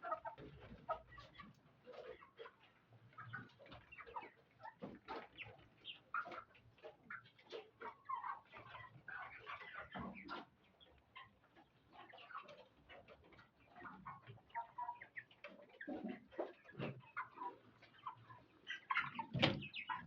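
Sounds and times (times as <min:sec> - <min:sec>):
chickens clucking: 0:00.0 - 0:20.0.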